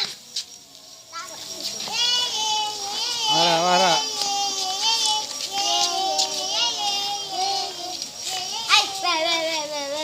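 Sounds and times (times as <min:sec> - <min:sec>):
children singing: 0:01.2 - 0:10.0.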